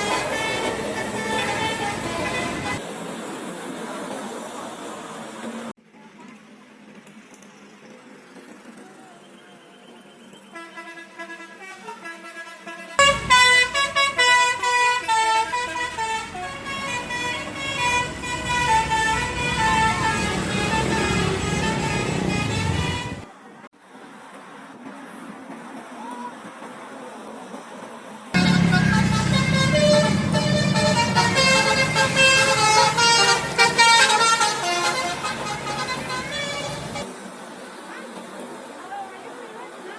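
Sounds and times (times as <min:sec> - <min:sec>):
musical air horn melody: 0:00.0 - 0:02.8, 0:10.5 - 0:23.3, 0:28.4 - 0:37.1
engine and street noise: 0:00.0 - 0:10.8, 0:12.3 - 0:39.9.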